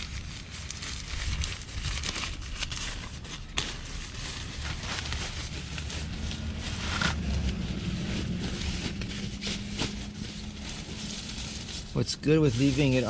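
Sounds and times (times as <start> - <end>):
fabric rustling and crinkling: 0.0 - 13.0
low rumble: 4.0 - 12.0.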